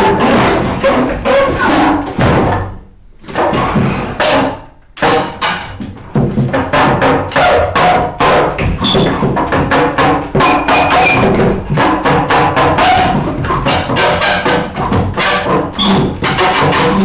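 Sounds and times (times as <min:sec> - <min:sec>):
drums: 0:00.0 - 0:17.0
wood block knocks: 0:04.3 - 0:17.0.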